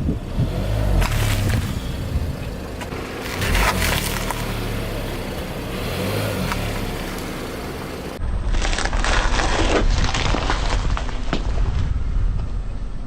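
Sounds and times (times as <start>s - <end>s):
car engine and tyre rumble: 0.0s - 13.0s
tyre crushing crunchy object: 2.8s - 4.9s, 8.4s - 11.9s.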